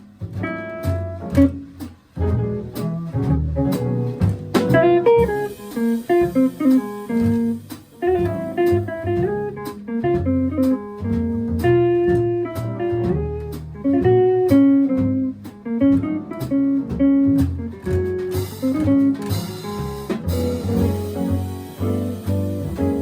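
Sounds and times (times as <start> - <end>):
bass: 0.0 - 23.0
drum strikes: 0.0 - 23.0
electric jazz guitar: 0.0 - 23.0
piano: 0.0 - 23.0
cymbals: 3.8 - 9.7, 18.4 - 23.0.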